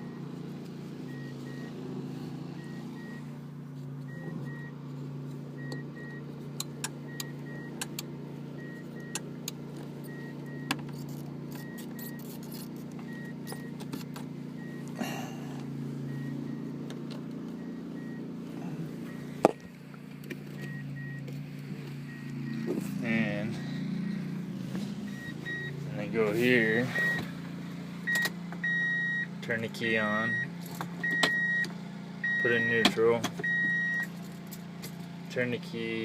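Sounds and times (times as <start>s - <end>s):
steady low hum: 0.0s - 29.5s
warning chime beeping: 25.0s - 27.3s, 28.1s - 34.1s.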